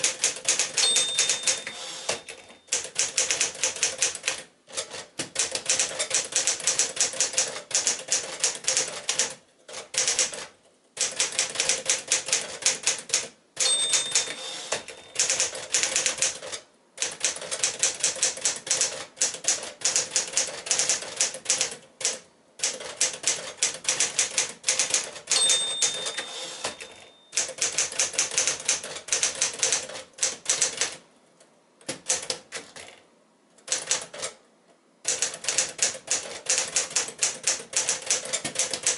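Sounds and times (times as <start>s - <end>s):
typewriter key strikes: 0.0s - 4.2s, 4.8s - 21.7s, 22.6s - 30.9s, 35.1s - 38.9s
typewriter bell ringing: 0.6s - 3.0s, 13.6s - 15.5s, 25.2s - 27.6s.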